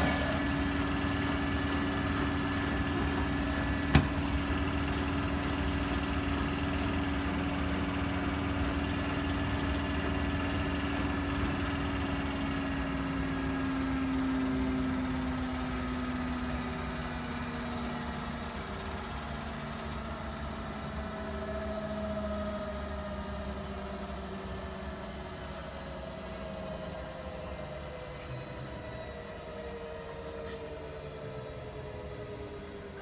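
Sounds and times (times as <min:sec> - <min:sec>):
drain pump humming: 0:00.0 - 0:19.4.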